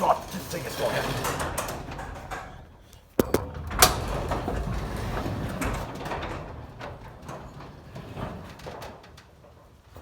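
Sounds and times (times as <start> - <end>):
garage door rumbling along tracks: 4.0 - 10.0.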